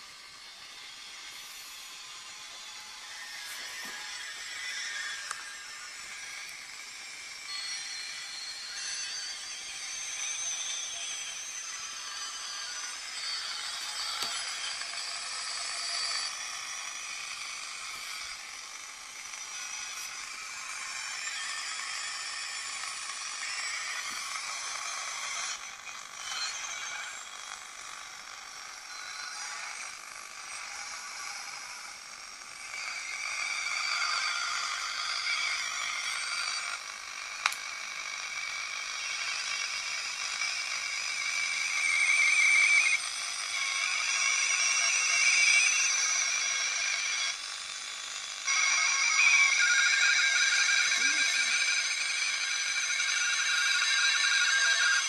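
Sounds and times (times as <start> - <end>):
wavering whistling tones: 0.0 - 18.5, 41.0 - 46.1, 48.5 - 55.0.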